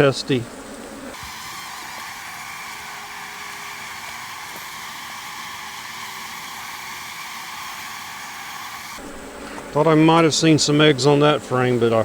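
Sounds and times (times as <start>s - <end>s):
honey bees buzzing: 0.0s - 12.0s.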